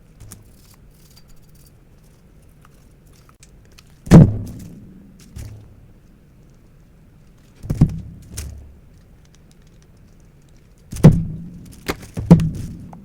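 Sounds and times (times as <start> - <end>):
metal pistol parts clacking: 0.2 - 4.0.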